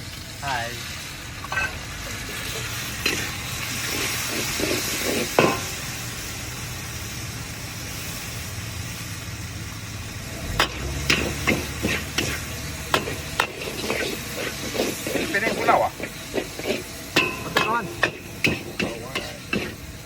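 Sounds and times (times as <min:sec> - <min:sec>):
noodles sizzling in wok: 0:00.0 - 0:20.0
spatula scraping wok: 0:01.4 - 0:06.0, 0:10.4 - 0:20.0
spatula clanking on wok: 0:04.4 - 0:05.8, 0:10.5 - 0:19.9.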